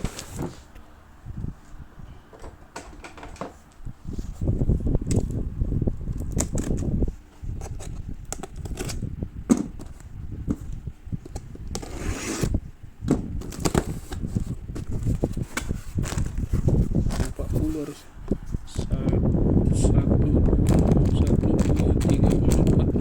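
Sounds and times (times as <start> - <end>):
clicks knocks and scrapes: 6.2 - 17.5.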